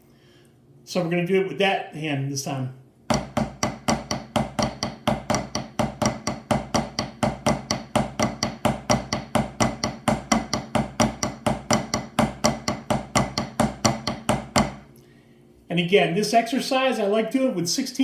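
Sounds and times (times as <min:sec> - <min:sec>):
drumsticks playing triplets: 0:03.1 - 0:14.8.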